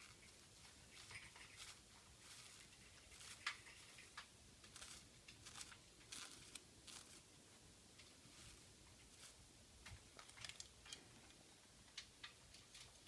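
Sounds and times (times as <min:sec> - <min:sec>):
stick scratching feathers: 0:00.0 - 0:07.3.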